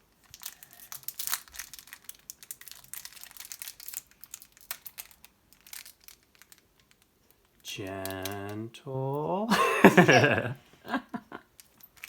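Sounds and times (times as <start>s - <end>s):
foil wrapper crinkling and tearing: 0.0s - 7.6s, 11.4s - 12.0s.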